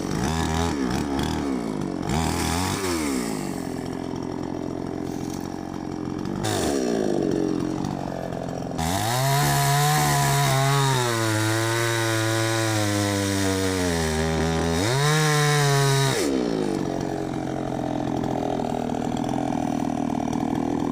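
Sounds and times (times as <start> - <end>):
chainsaw cutting branch: 0.0 - 20.9
chainsaw engine revving: 0.0 - 20.9.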